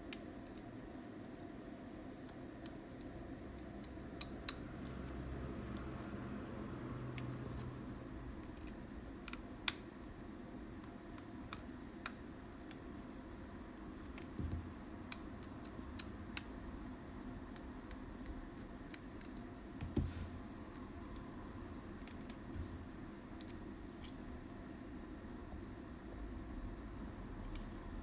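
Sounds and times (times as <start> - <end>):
low steady hum: 0.0 - 28.0
dull thumps: 14.3 - 14.8.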